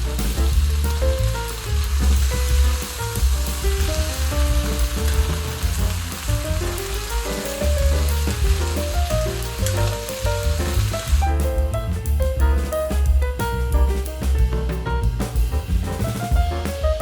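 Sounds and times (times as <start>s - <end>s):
background music with bass line: 0.0s - 17.0s
food sizzling in a hot pan: 1.5s - 11.2s.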